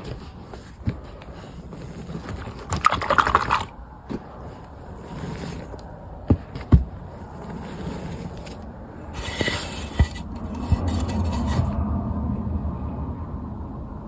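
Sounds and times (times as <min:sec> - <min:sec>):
chalk crunching: 0:09.2 - 0:11.8.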